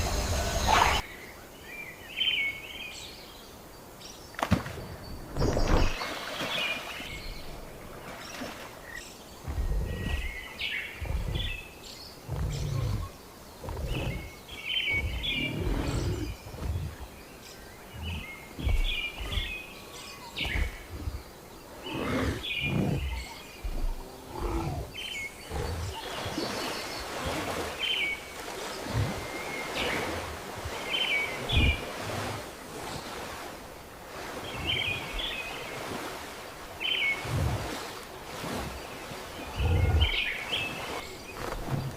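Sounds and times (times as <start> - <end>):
bird chirping: 5.0 - 27.2.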